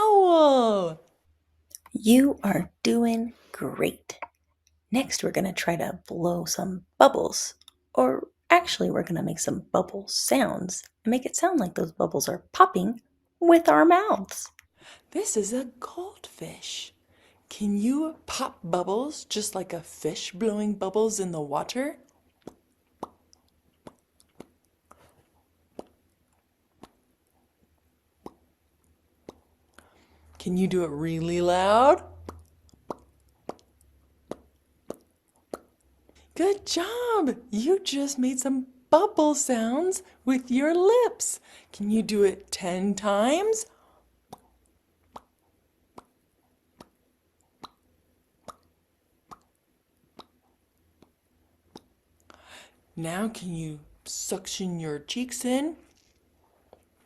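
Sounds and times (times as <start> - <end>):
person popping lips: 22.4 - 24.7, 25.7 - 26.0, 28.2 - 28.5, 29.2 - 29.5, 32.1 - 35.8, 46.8 - 48.7, 49.3 - 49.6, 50.2 - 50.4.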